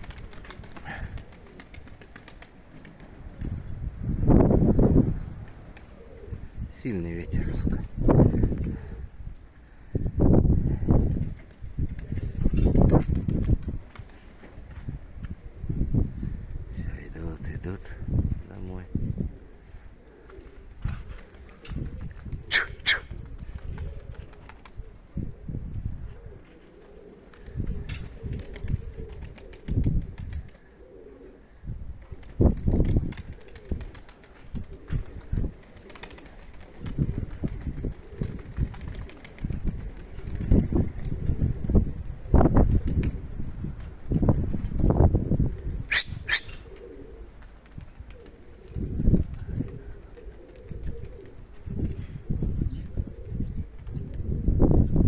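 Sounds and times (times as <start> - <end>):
pigeons cooing: 0.0 - 3.6, 5.0 - 9.8, 12.0 - 16.8, 17.9 - 55.0
wind buffeting microphone: 3.0 - 26.6, 27.3 - 30.6, 31.5 - 55.0
short sharp high sounds: 22.5 - 23.0, 45.9 - 46.6.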